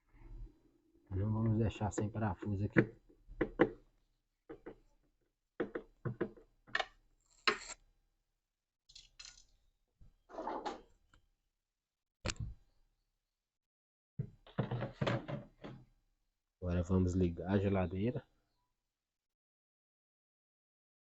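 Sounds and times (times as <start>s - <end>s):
knocks and clicks on plastic: 2.7s - 3.8s, 4.5s - 4.9s, 5.6s - 6.9s.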